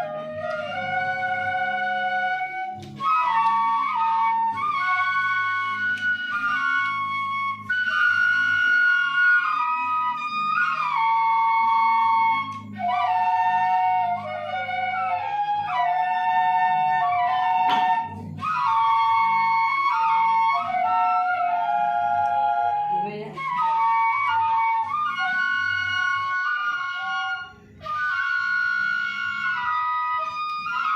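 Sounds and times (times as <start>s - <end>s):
bamboo flutes playing melody: 0.0s - 30.9s.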